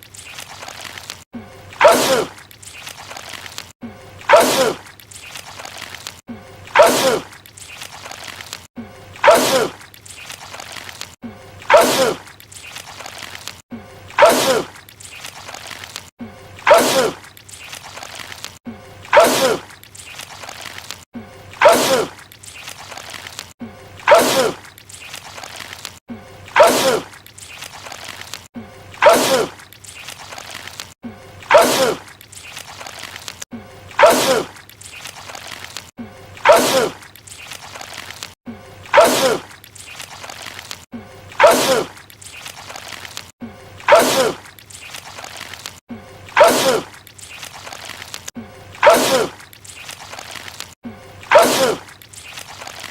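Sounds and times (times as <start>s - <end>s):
man sneezing: 48.8s - 49.4s, 51.3s - 51.8s.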